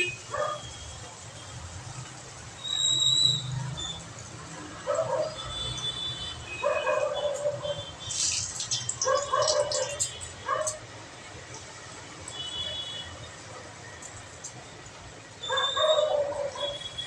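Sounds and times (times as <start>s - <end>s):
dog barking and yelping: 0.3s - 0.6s, 4.8s - 5.4s, 6.6s - 7.8s, 9.0s - 10.8s, 15.5s - 16.8s.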